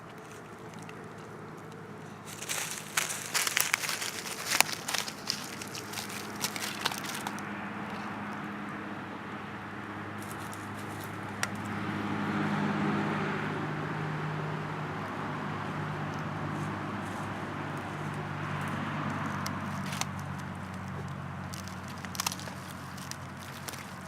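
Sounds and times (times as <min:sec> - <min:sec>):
low mechanical hum: 0:00.0 - 0:24.0
footsteps crunching dry leaves: 0:00.2 - 0:08.1, 0:10.2 - 0:11.2, 0:16.6 - 0:24.0.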